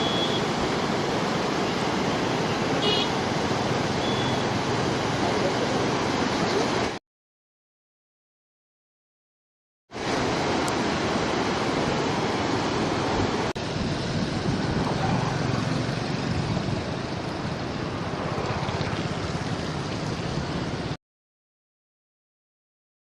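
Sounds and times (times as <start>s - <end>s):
rushing floodwater roar: 0.0s - 7.0s, 9.9s - 21.0s
wind buffeting microphone: 13.2s - 20.6s.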